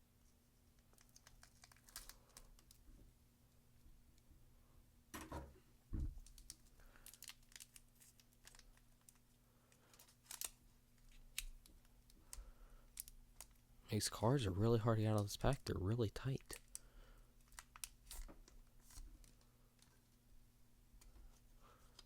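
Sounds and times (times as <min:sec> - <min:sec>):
foil wrapper crinkling: 0:00.9 - 0:02.8, 0:06.2 - 0:13.6, 0:17.4 - 0:19.9.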